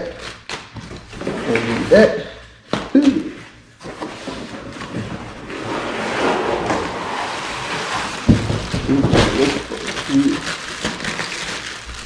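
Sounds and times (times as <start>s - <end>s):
packaging rustling: 3.9s - 12.0s.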